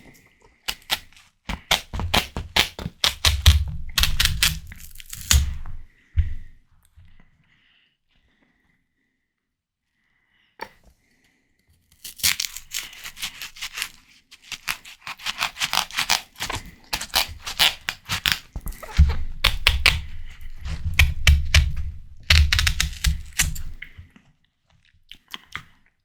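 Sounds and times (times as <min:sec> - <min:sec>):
wet crunching of watermelon: 0:00.0 - 0:05.9, 0:11.9 - 0:24.2.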